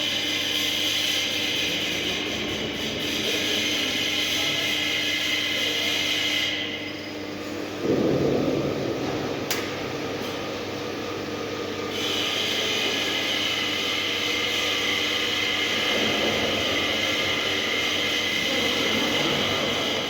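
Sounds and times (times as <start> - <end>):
welding arc hissing: 11.9 - 20.0.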